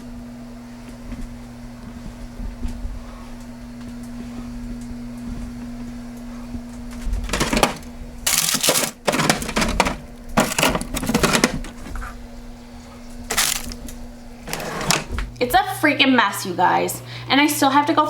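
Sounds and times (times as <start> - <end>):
steady low hum: 0.0 - 18.0
items clattering in a refrigerator: 5.2 - 15.6.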